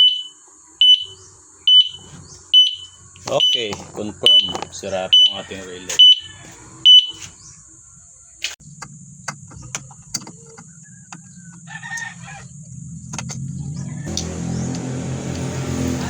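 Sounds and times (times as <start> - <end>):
turn-signal beeper: 0.0 - 7.2
low engine hum: 0.8 - 16.0
rooster crowing: 4.4 - 7.4, 10.8 - 12.6, 13.6 - 15.9.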